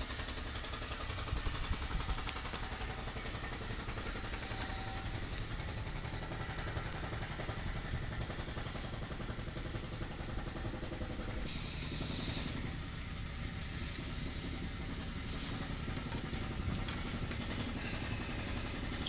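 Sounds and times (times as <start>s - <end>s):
electric core drill boring: 0.0s - 7.6s.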